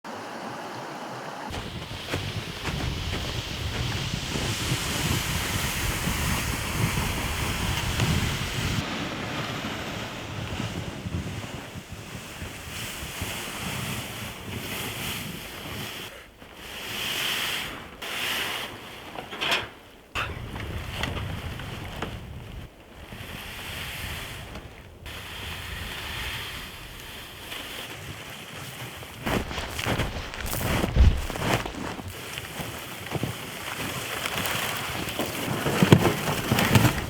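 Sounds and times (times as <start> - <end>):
gusting wind: 1.4 - 17.0, 20.1 - 27.9, 29.0 - 32.9, 34.3 - 37.0
wind buffeting microphone: 1.5 - 16.0, 20.2 - 27.5, 29.2 - 32.3.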